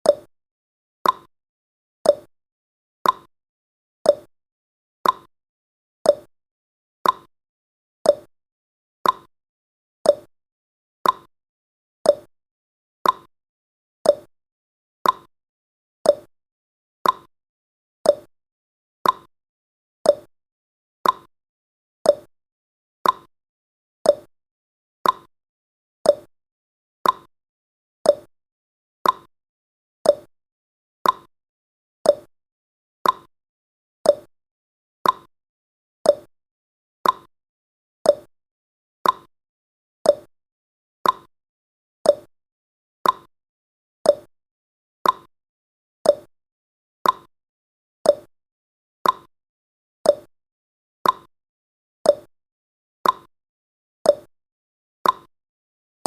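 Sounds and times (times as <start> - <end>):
timer ticking: 0.0 - 0.3, 1.0 - 1.3, 2.1 - 2.3, 3.0 - 3.3, 4.1 - 4.3, 5.0 - 5.3, 6.1 - 6.3, 7.0 - 7.3, 8.1 - 8.3, 9.0 - 9.3, 10.1 - 10.3, 11.0 - 11.3, 12.1 - 12.3, 13.0 - 13.3, 14.0 - 14.3, 15.0 - 15.3, 16.1 - 16.3, 17.0 - 17.3, 18.1 - 18.3, 19.0 - 19.3, 20.1 - 20.3, 21.0 - 21.3, 22.1 - 22.3, 23.0 - 23.3, 24.1 - 24.3, 25.0 - 25.3, 26.0 - 26.3, 27.0 - 27.3, 28.0 - 28.3, 29.0 - 29.3, 30.0 - 30.3, 31.0 - 31.3, 32.0 - 32.3, 33.0 - 33.3, 34.1 - 34.3, 35.0 - 35.3, 36.0 - 36.3, 37.0 - 37.3, 38.1 - 38.3, 39.0 - 39.3, 40.0 - 40.3, 41.0 - 41.3, 42.1 - 42.3, 43.0 - 43.3, 44.1 - 44.3, 45.0 - 45.3, 46.1 - 46.3, 47.0 - 47.3, 48.1 - 48.3, 49.0 - 49.3, 50.1 - 50.3, 51.0 - 51.3, 52.1 - 52.3, 53.0 - 53.3, 54.1 - 54.3, 55.0 - 55.3.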